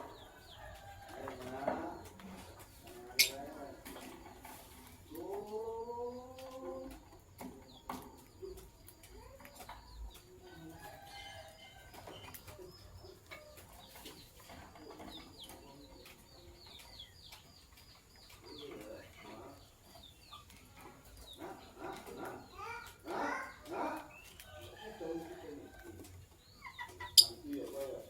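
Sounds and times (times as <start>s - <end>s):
lovebirds chattering calls: 0.0s - 4.1s, 21.1s - 28.0s
lovebirds chirping: 0.0s - 4.3s, 6.6s - 28.0s.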